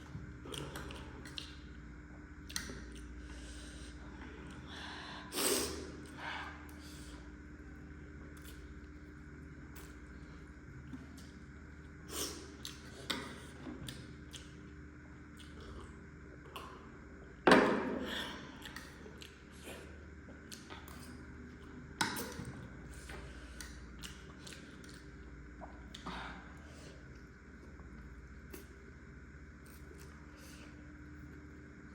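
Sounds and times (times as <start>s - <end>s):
chewing noodles: 0.5s - 1.8s, 15.3s - 16.8s, 18.6s - 26.1s.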